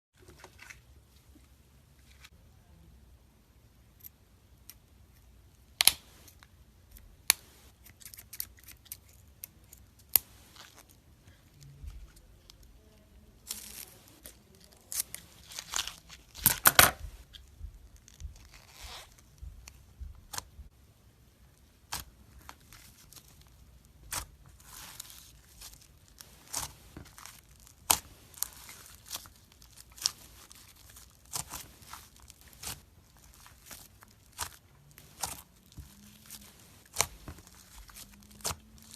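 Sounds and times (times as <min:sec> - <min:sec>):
soft rustling: 0:21.5 - 0:38.9.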